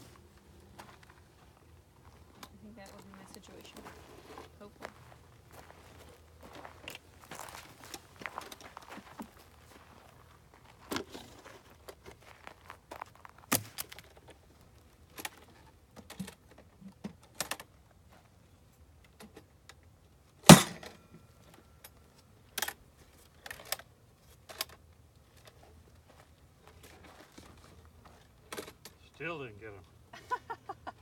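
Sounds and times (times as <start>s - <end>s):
equipment clicking and rattling: 22.5s - 25.8s.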